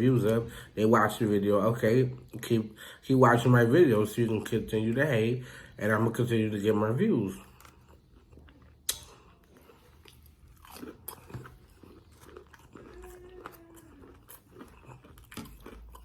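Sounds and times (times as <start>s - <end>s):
person chewing food: 7.2s - 16.0s
wet mouth clicks: 8.8s - 9.3s.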